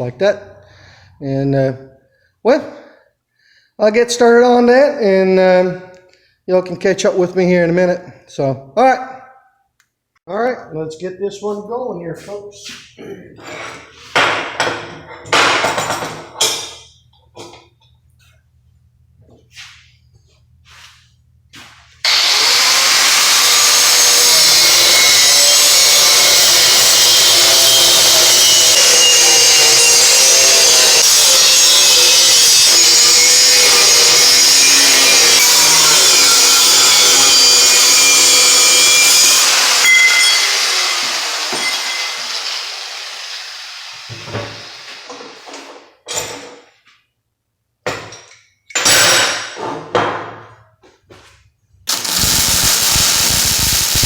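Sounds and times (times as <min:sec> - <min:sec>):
angle grinder cutting steel: 0:22.0 - 0:45.5, 0:51.9 - 0:54.0.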